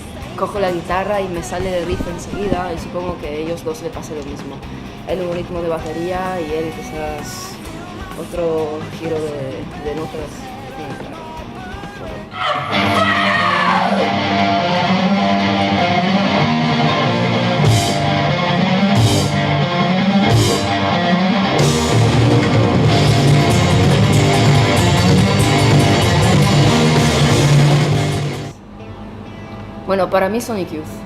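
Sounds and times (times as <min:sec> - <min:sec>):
bass: 0:00.0 - 0:28.6
distorted electric guitar riff: 0:12.3 - 0:28.6
drumming: 0:17.6 - 0:28.6.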